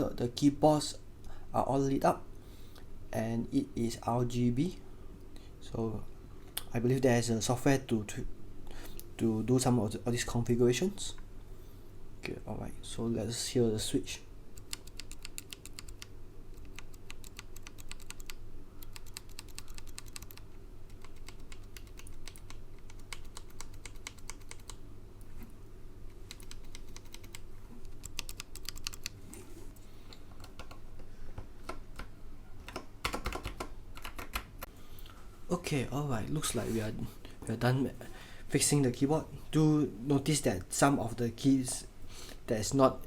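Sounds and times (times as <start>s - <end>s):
mechanical keyboard keystroke clacks: 32.7s - 34.5s.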